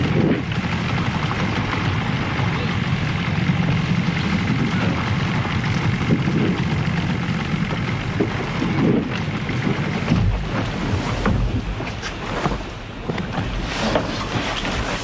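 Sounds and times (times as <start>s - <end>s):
boat engine running: 0.0s - 15.0s
sea noise: 0.0s - 15.0s
wind: 0.0s - 15.0s.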